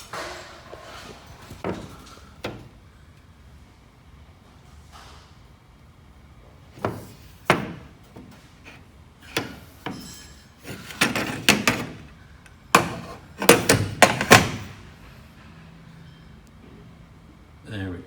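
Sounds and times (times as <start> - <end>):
knocks on hollow metal frame: 12.7 - 14.8.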